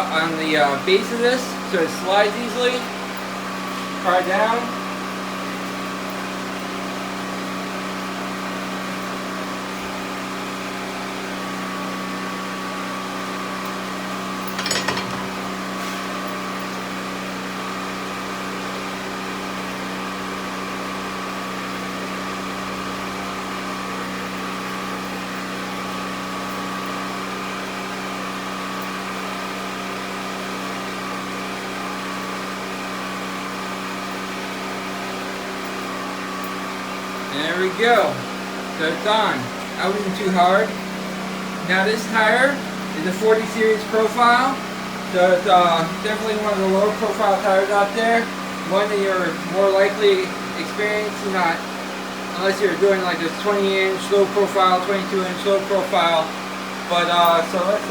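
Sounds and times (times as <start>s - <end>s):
shop machinery humming: 8.4s - 26.9s, 33.1s - 57.9s.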